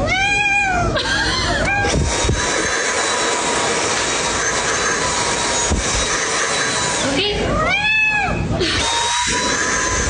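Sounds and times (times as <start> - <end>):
cat meowing: 0.0 - 1.0, 7.5 - 10.0
loud rushing noise: 1.8 - 7.2, 8.7 - 10.0.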